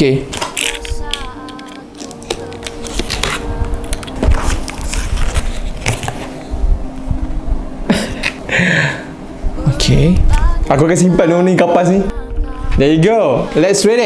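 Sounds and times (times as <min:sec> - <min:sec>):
background music: 0:00.0 - 0:14.0.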